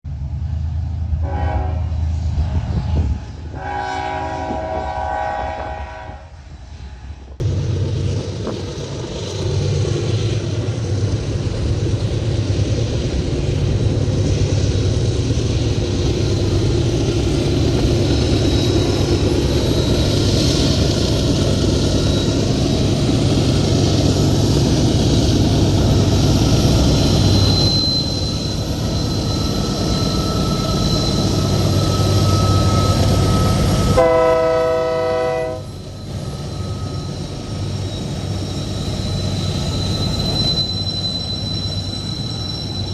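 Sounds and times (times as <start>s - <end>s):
locomotive engine rumble: 0.1s - 42.9s
locomotive horn blasts: 1.2s - 2.0s, 3.5s - 6.4s, 32.7s - 35.7s
train wheels rolling on rails: 6.4s - 42.9s.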